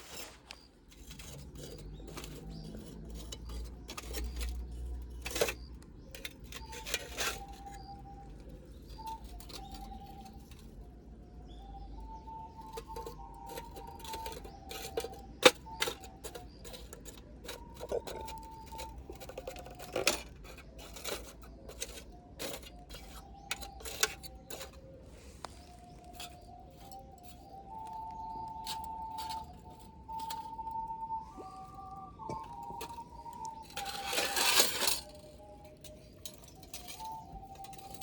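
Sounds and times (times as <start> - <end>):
recorder melody: 23.4 - 38.0.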